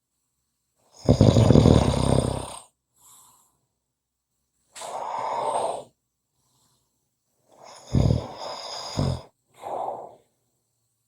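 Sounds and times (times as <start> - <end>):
person snoring: 1.0 - 2.7, 4.8 - 5.9, 7.6 - 10.2
breathy exhale: 4.8 - 6.8.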